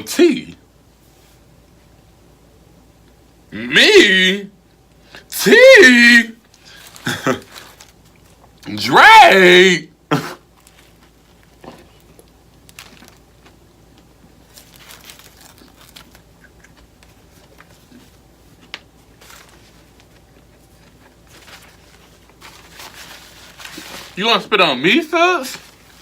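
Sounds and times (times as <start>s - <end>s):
food packaging crinkling: 6.4s - 8.6s, 10.5s - 24.2s, 25.4s - 26.0s
small crunches and clicks: 10.5s - 24.2s.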